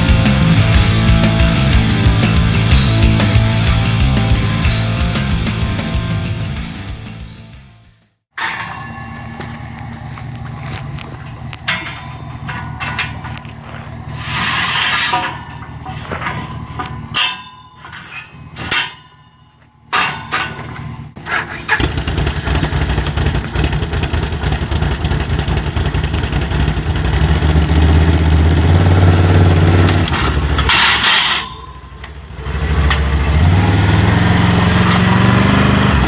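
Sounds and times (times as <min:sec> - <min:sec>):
low running sound: 0:08.4 - 0:21.2
clicks and knocks: 0:08.4 - 0:22.0
small engine running: 0:21.6 - 0:30.8, 0:32.2 - 0:36.0.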